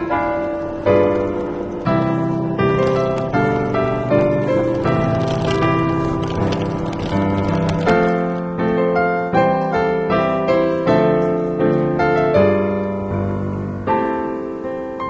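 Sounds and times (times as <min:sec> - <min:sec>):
gentle piano music: 0:00.0 - 0:15.0.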